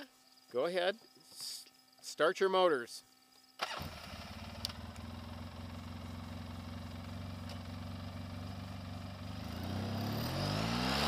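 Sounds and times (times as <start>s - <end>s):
atv engine idling: 3.7s - 10.2s.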